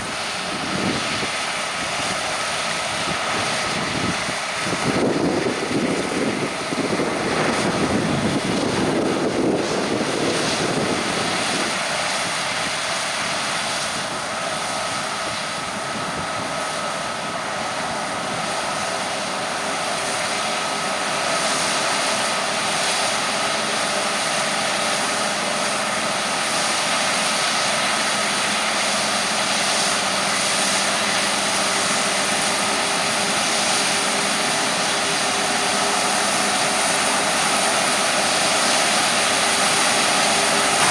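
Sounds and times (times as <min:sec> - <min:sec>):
diesel farm machinery droning: 0:00.0 - 0:40.9
heavy low rumble: 0:02.9 - 0:11.5.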